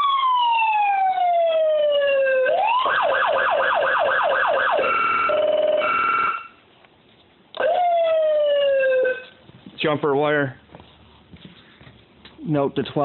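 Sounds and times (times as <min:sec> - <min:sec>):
electronic siren wailing and yelping: 0:00.0 - 0:06.5, 0:07.6 - 0:09.3.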